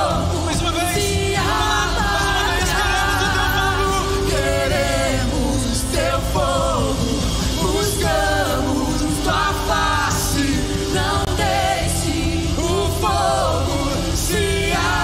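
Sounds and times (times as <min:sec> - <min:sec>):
voices singing held notes: 0:00.0 - 0:15.0
worship band playing: 0:00.0 - 0:15.0.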